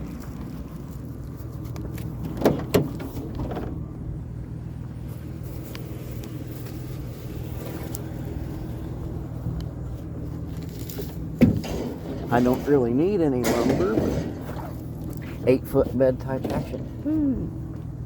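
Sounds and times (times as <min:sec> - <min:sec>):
sharp clunks: 0:11.4 - 0:14.7.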